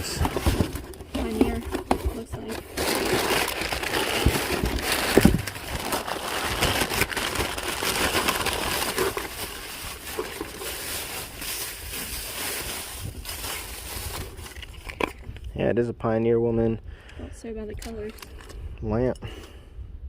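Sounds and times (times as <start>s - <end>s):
packaging rustling and crinkling: 0.0s - 15.4s.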